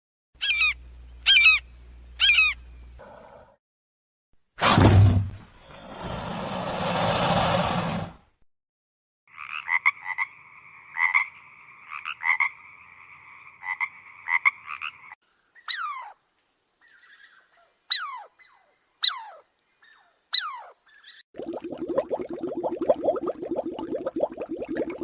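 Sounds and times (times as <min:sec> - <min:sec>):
frogs croaking chorus: 0:09.3 - 0:15.2.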